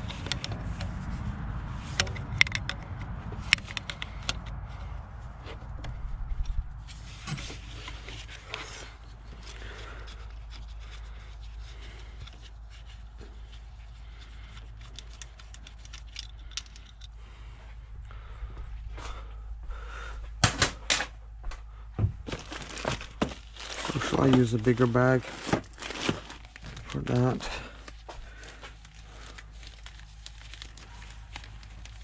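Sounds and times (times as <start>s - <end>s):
metal tools clinking: 14.2s - 17.2s.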